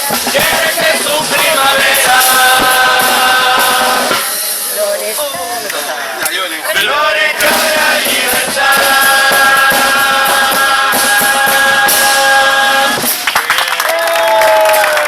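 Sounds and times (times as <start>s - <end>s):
chorus singing: 0.0s - 13.3s
drums and cymbals: 0.0s - 13.5s.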